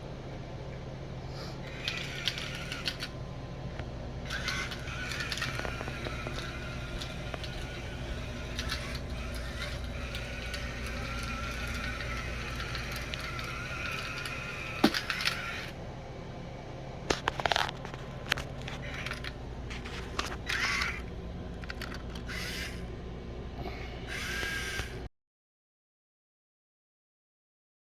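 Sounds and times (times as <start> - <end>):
small electric motors whining: 1.3 - 3.2, 4.2 - 15.8, 17.2 - 22.9, 23.6 - 25.1.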